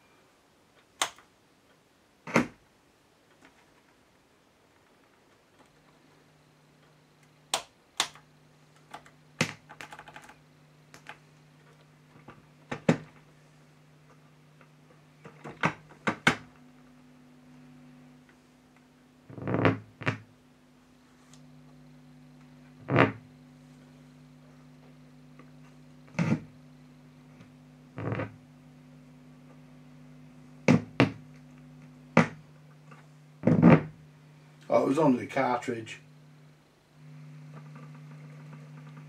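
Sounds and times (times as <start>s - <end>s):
steady low electrical hum: 0.0s - 39.0s
knocks and clicks on record player: 12.2s - 13.2s, 15.3s - 16.5s, 32.2s - 32.4s.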